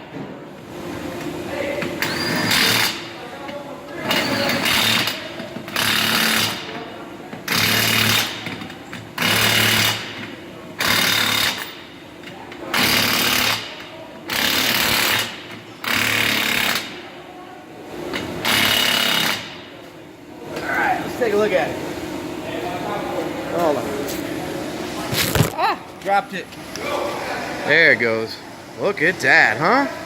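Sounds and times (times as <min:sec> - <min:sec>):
impact wrench rattling: 0:07.5 - 0:11.9.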